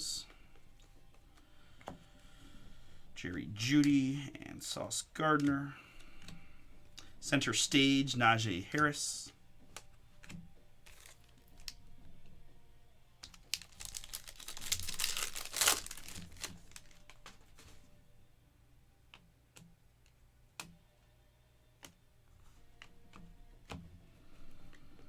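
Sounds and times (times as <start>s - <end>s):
cards clicking and tapping: 5.2s - 11.9s, 13.2s - 17.9s, 21.8s - 24.9s
foil wrapper crinkling: 10.8s - 11.8s, 13.2s - 17.8s.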